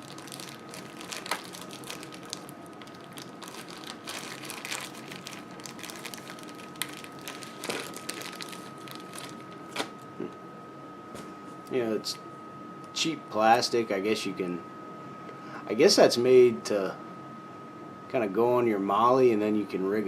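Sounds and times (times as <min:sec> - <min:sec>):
plastic packaging crinkling: 0:00.0 - 0:10.1.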